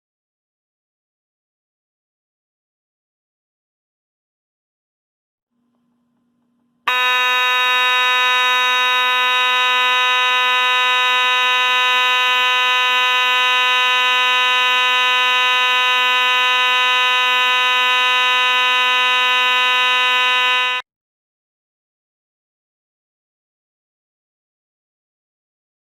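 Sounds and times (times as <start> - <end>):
fire alarm horn blaring: 6.9 - 20.9.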